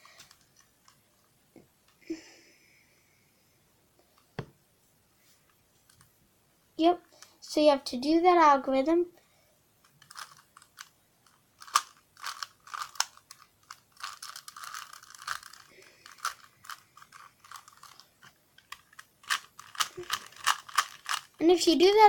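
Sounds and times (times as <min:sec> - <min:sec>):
plastic puzzle cube clicking: 0:09.9 - 0:21.4.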